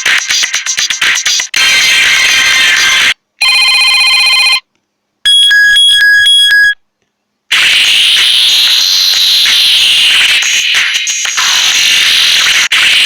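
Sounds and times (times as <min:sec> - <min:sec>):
phone ringtone tune: 0:03.4 - 0:04.6.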